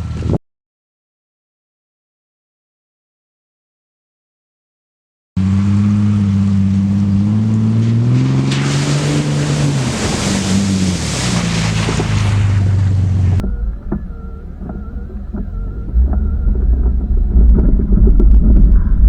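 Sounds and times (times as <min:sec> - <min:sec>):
car engine running under load: 0:05.4 - 0:19.0.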